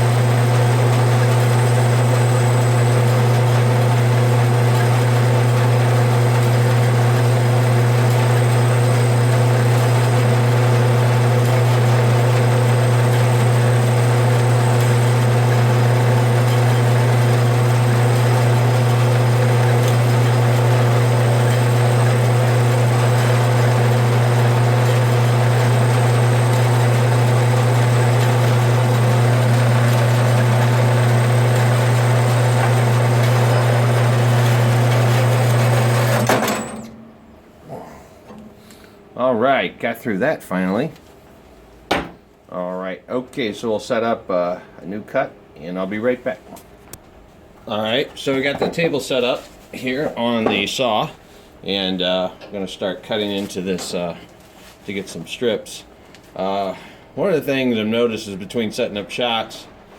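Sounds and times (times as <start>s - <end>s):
band saw cutting brass: 0.0s - 36.7s.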